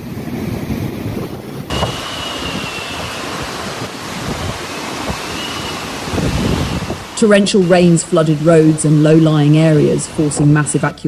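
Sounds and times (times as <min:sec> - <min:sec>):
surging surf: 0:00.0 - 0:11.0
wind blowing on microphone: 0:00.0 - 0:11.0
faint high whistle: 0:01.7 - 0:03.4, 0:05.3 - 0:05.8.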